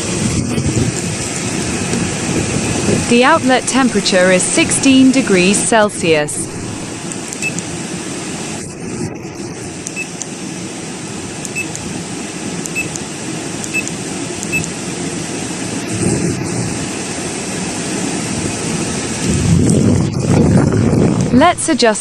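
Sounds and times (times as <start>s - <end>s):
air conditioner fan humming: 0.0s - 8.6s.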